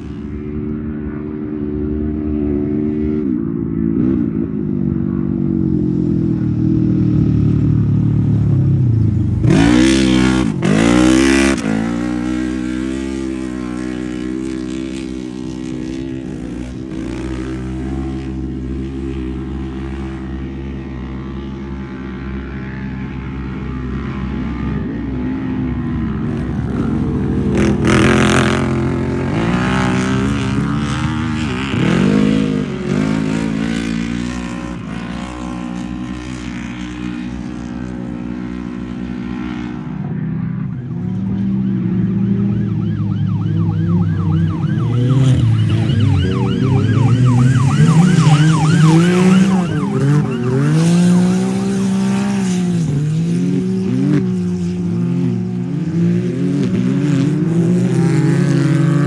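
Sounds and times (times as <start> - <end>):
race vehicle engines revving: 5.2 - 59.0
vehicle rushing past: 25.8 - 34.2, 41.1 - 59.0.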